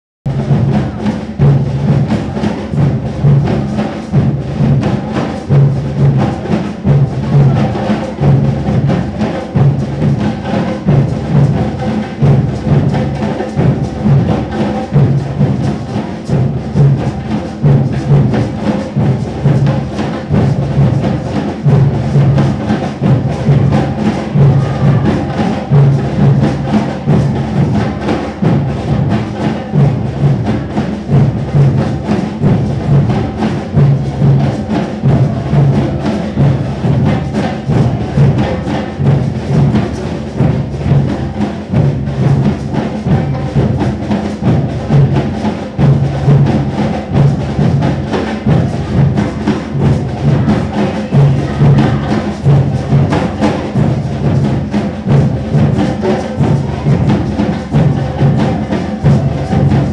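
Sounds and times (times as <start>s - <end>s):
busy percussion: 0.3s - 59.9s
low drum beat: 0.3s - 59.9s.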